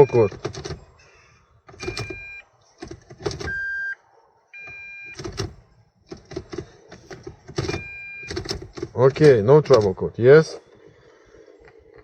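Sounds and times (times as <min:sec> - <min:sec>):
electronic warning beeps: 0:00.0 - 0:00.4, 0:01.8 - 0:02.5, 0:03.4 - 0:04.0, 0:04.6 - 0:05.4, 0:07.6 - 0:08.5
gearbox clicking and whirring: 0:00.0 - 0:00.9, 0:04.7 - 0:10.9.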